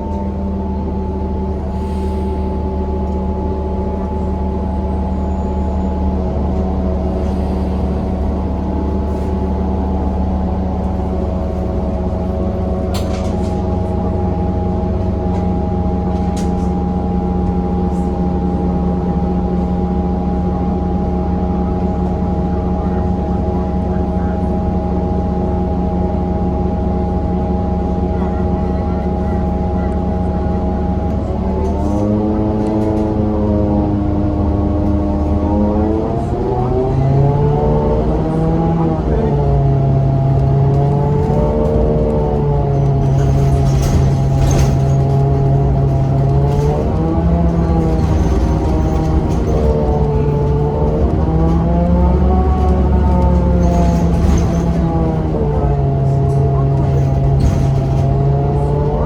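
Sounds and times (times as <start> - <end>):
bus engine rumbling: 0.0 - 59.0.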